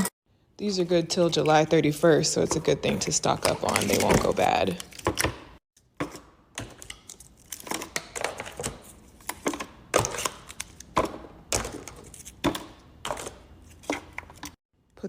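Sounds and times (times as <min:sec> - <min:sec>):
plastic cups clicking and knocking: 0:02.3 - 0:14.6.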